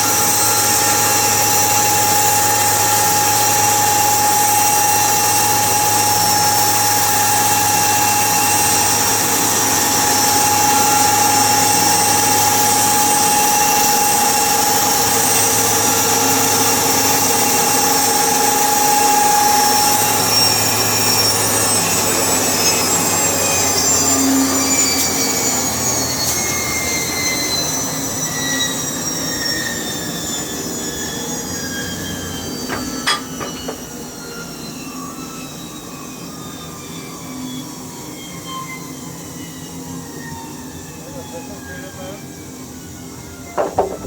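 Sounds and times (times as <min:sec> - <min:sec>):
saw spinning down whine: 0:00.0 - 0:35.2, 0:43.0 - 0:44.0
sharp knock: 0:43.6 - 0:44.0.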